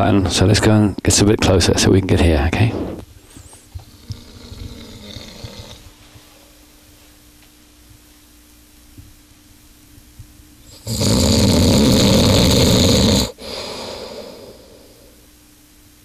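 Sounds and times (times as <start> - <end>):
man snoring loudly: 3.9 - 5.8, 10.7 - 15.2
soft breath: 13.4 - 15.3.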